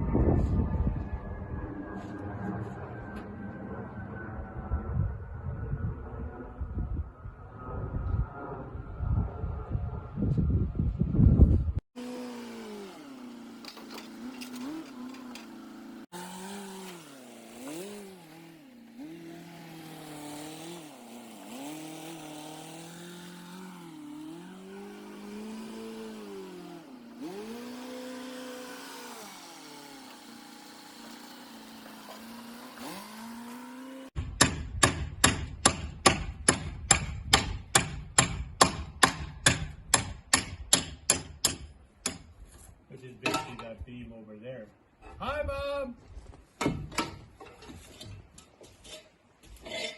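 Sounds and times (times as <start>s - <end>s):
engine revving: 12.0s - 34.2s
loud sharp knocks: 34.4s - 42.2s.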